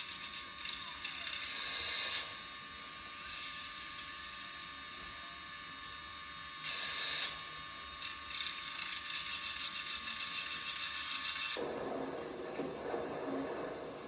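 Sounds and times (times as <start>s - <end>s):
washing machine running: 0.0s - 14.0s
washing machine churning: 7.6s - 14.0s.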